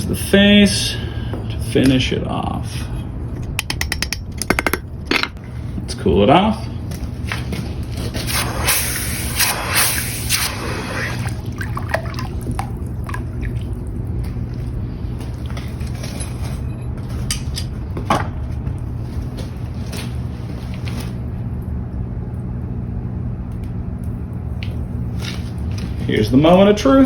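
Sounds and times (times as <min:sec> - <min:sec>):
low hum: 0:00.9 - 0:08.1, 0:11.2 - 0:26.0
sharp click: 0:03.4 - 0:05.3
hot iron hissing in water: 0:08.3 - 0:11.3
water bubbling and dripping: 0:11.2 - 0:15.6.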